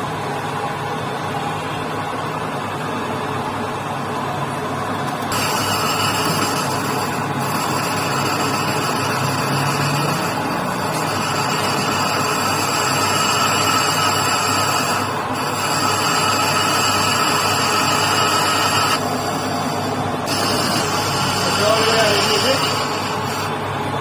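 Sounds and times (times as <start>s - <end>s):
metalworking machine noise: 0.1s - 24.0s
high whine: 5.3s - 24.0s.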